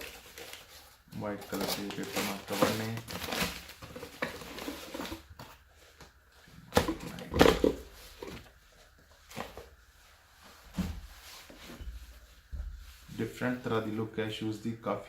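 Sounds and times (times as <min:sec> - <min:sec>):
wrapping paper rustling: 0:00.0 - 0:05.7.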